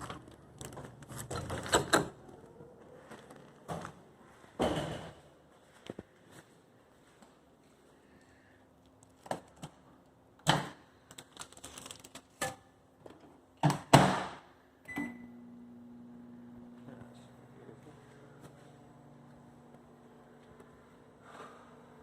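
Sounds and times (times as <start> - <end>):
microwave oven humming: 13.7 - 22.0.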